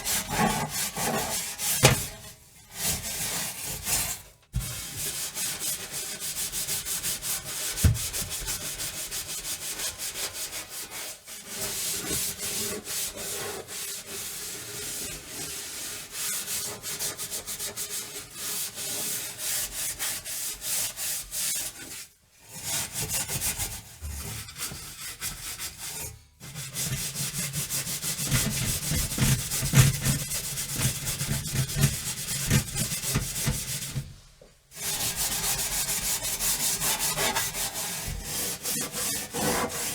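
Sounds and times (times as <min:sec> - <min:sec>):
scrubbing oven surface: 0:00.0 - 0:06.8, 0:23.6 - 0:39.9.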